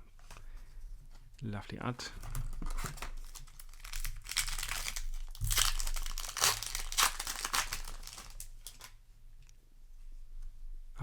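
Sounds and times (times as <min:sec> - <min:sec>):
foil wrapper crinkling: 0:02.2 - 0:09.0.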